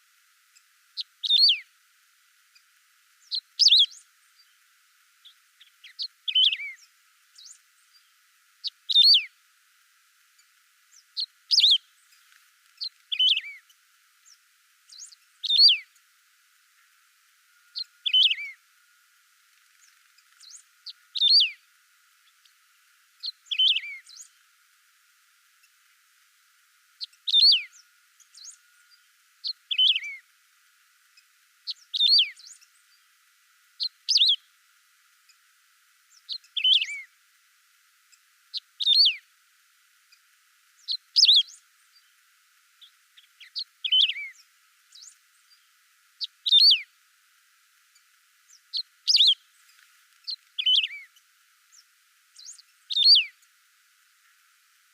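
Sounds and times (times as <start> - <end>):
finch singing: 0.6 - 1.7, 2.6 - 4.6, 5.2 - 9.3, 10.4 - 16.0, 17.6 - 18.6, 19.7 - 21.6, 23.2 - 24.4, 27.0 - 30.2, 31.6 - 33.1, 33.8 - 34.5, 36.1 - 37.1, 38.5 - 39.2, 40.8 - 42.1, 42.8 - 46.9, 48.0 - 53.4.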